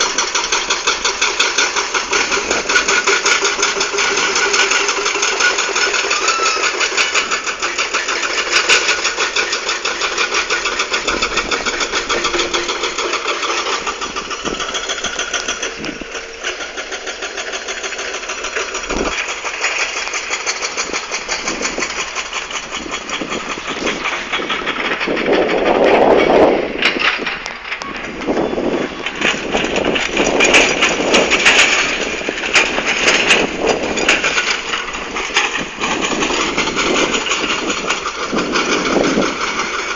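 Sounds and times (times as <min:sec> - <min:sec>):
excavator diesel engine running: 0:00.0 - 0:39.9
bucket scraping against rock: 0:01.9 - 0:16.6.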